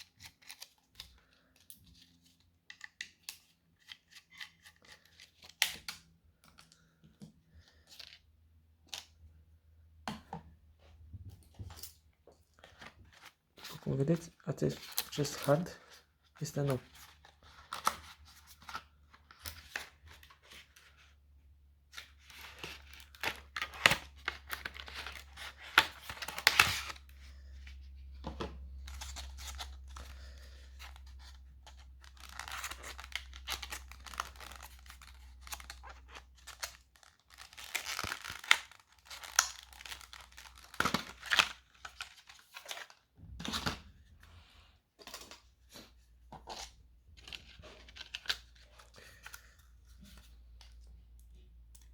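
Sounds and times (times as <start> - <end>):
packaging tearing and crinkling: 22.2 - 27.0, 31.2 - 42.9.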